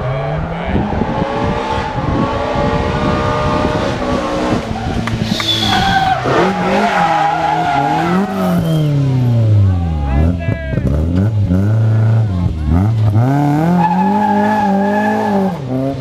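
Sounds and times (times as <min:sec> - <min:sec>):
rally car engine revving: 0:00.0 - 0:16.0
tyres squealing: 0:04.8 - 0:08.7.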